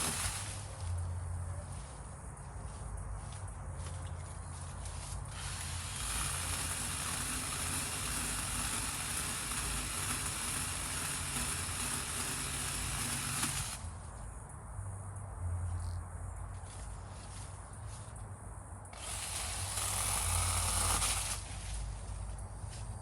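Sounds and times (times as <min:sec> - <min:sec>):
mini chainsaw cutting wood: 0:00.0 - 0:00.7, 0:05.3 - 0:13.9, 0:19.0 - 0:21.9.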